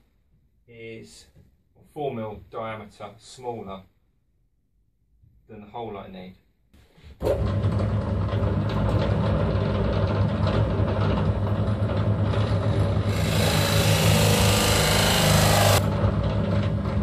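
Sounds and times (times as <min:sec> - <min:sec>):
electric drill boring into wood: 0:12.2 - 0:16.4.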